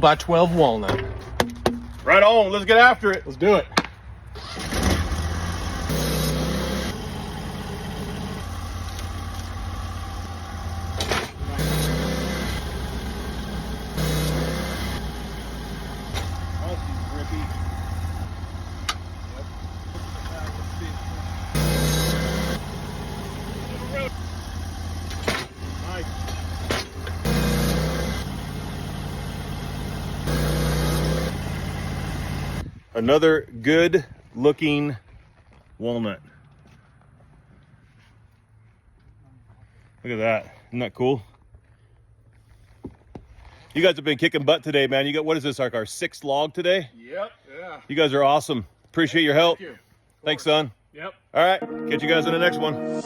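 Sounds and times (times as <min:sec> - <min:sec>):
sharp knock: 0:00.9 - 0:02.0
sawmill engine running: 0:04.4 - 0:32.6.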